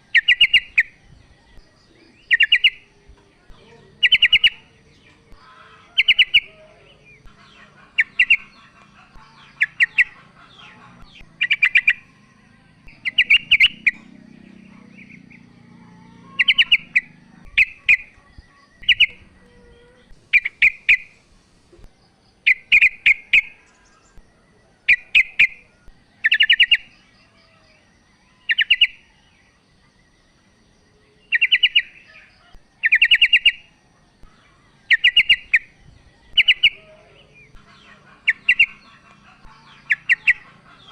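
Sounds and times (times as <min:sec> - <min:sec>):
bird chattering calls: 0:00.0 - 0:01.0, 0:01.6 - 0:21.2, 0:22.4 - 0:24.2, 0:31.3 - 0:33.7, 0:34.8 - 0:40.9.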